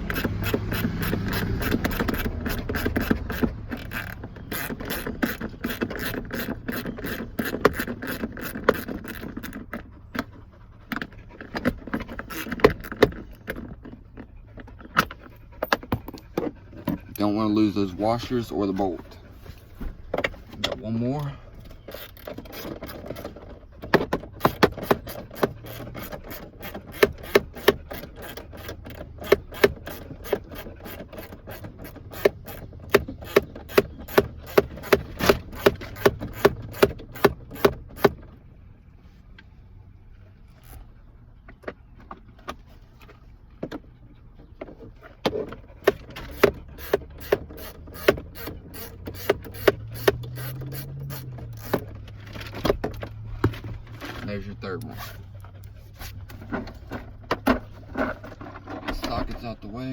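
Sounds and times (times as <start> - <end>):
socket ratchet clicking: 0.0 - 9.8, 24.3 - 38.2, 45.8 - 52.5.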